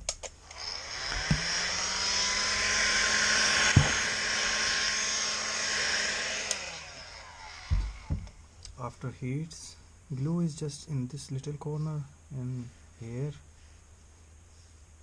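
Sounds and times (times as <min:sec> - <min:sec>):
heat gun fan whine and hiss: 0:00.0 - 0:10.6.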